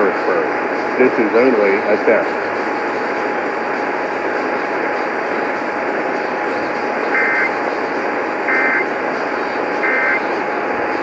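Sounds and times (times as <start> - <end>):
radio hiss: 0.0 - 11.0
buzzy data bursts: 7.1 - 7.6, 8.4 - 9.1, 9.8 - 10.4
faint steady whistle: 7.1 - 7.6, 8.5 - 8.9.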